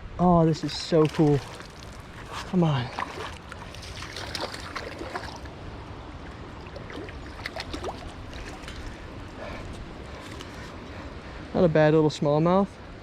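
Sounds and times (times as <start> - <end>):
river water rushing: 0.4 - 11.4
fish splashing at surface: 0.9 - 5.5.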